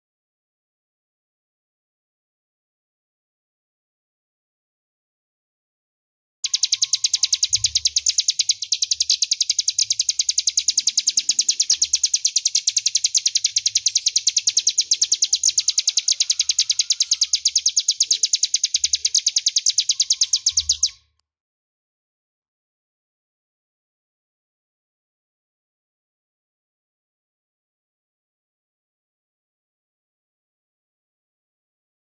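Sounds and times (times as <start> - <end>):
bird trilling song: 6.4 - 21.2.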